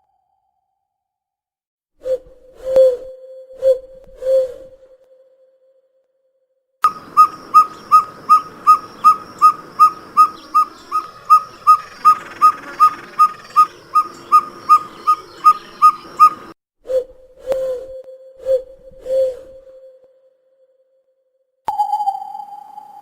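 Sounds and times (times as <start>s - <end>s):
owl whistled toots: 6.8s - 16.5s
lower owl hoot: 6.9s - 16.5s.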